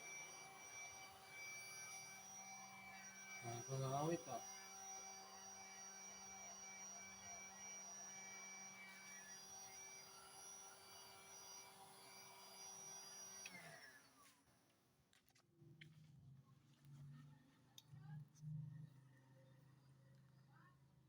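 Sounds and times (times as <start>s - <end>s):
heat gun motor whine: 0.0s - 14.4s.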